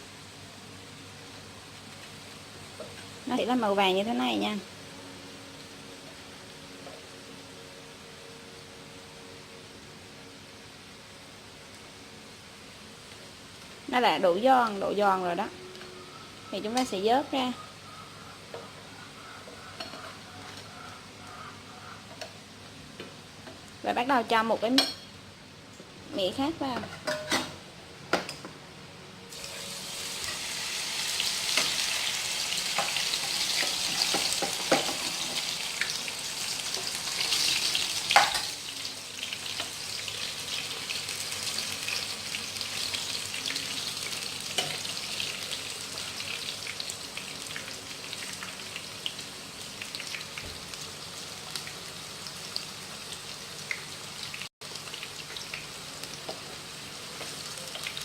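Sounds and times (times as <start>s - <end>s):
deep-frying sizzle in hot oil: 0.0s - 15.5s, 29.3s - 58.0s.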